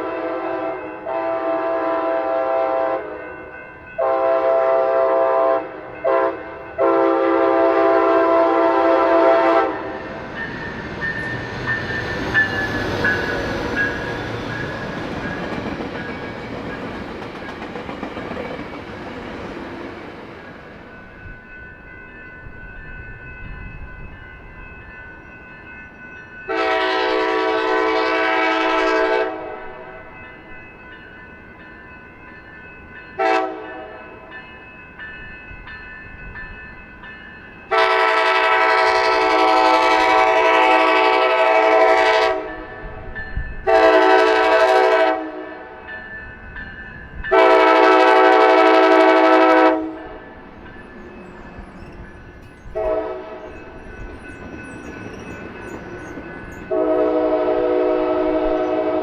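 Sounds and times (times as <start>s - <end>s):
locomotive air horn blasts: 0.0s - 3.2s, 4.0s - 10.0s, 26.5s - 29.7s, 33.2s - 34.0s, 37.7s - 42.6s, 43.7s - 45.6s, 47.3s - 50.1s, 52.8s - 53.4s, 56.7s - 59.0s.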